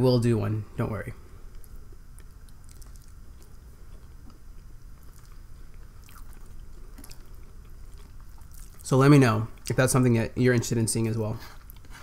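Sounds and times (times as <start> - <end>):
chewing food: 1.5 - 8.9.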